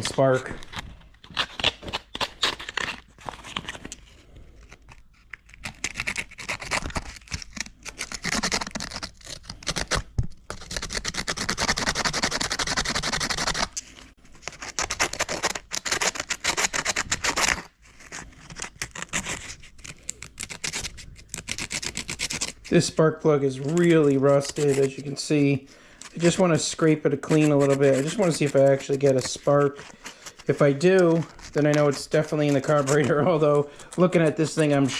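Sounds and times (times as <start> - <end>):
sandpaper scraping metal: 10.5 - 13.8, 20.3 - 34.9.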